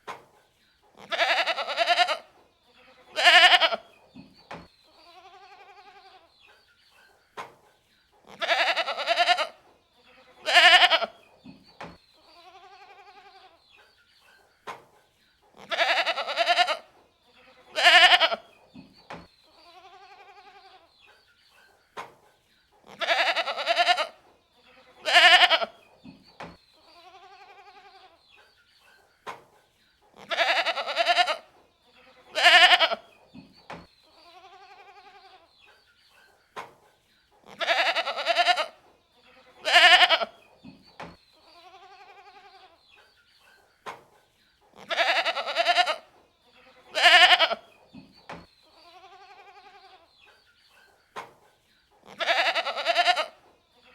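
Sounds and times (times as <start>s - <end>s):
goats bleating: 1.0s - 2.3s, 2.9s - 3.9s, 5.0s - 6.3s, 8.3s - 9.6s, 10.2s - 11.2s, 12.3s - 13.6s, 15.6s - 18.4s, 19.6s - 20.9s, 22.9s - 25.8s, 27.0s - 28.2s, 30.2s - 31.5s, 32.1s - 33.1s, 34.2s - 35.5s, 37.5s - 40.4s, 41.5s - 42.8s, 44.8s - 47.6s, 48.8s - 50.1s, 52.1s - 53.4s.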